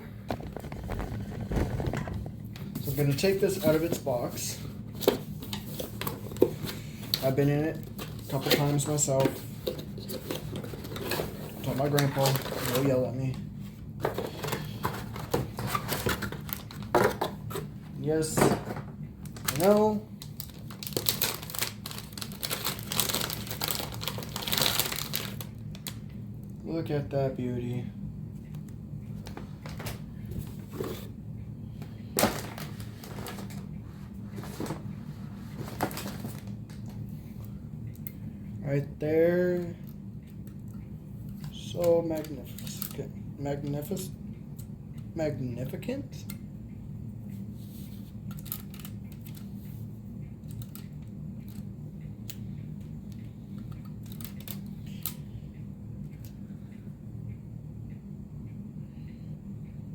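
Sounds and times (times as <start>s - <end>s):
steady low hum: 0.0s - 59.9s
packaging rustling: 0.3s - 2.5s, 5.0s - 13.0s, 14.0s - 17.6s, 18.5s - 26.0s, 35.5s - 36.6s
packaging knocks and clatters: 20.4s - 25.4s.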